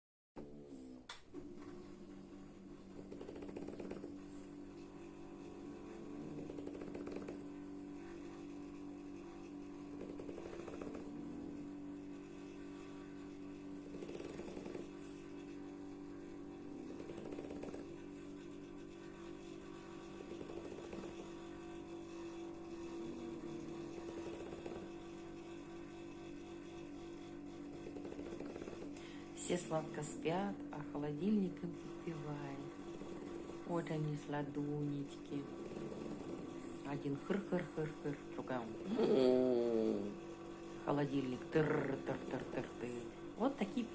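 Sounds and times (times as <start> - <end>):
person snoring: 0.4 - 1.1, 2.8 - 4.5, 5.4 - 7.5, 10.0 - 11.8, 13.7 - 15.2, 16.8 - 18.0, 23.0 - 25.0, 35.4 - 40.2
refrigerator hum: 0.4 - 43.9.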